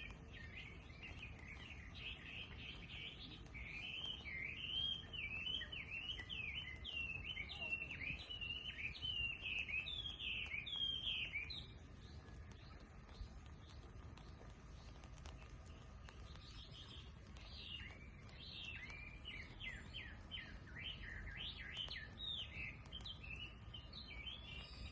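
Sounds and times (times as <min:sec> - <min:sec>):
songbird chirping: 0:00.0 - 0:24.9.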